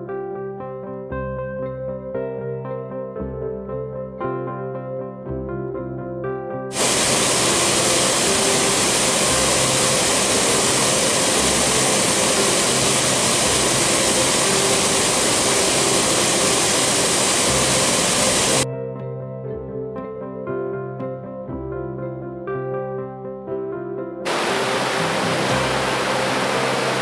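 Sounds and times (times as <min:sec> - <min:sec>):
soft instrumental music: 0:00.0 - 0:27.0
waterfall rushing: 0:06.7 - 0:18.6, 0:24.3 - 0:27.0.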